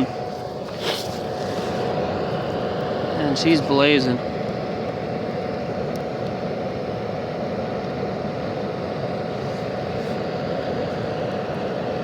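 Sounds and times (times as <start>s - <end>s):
furnace air blast roaring: 0.0s - 12.0s.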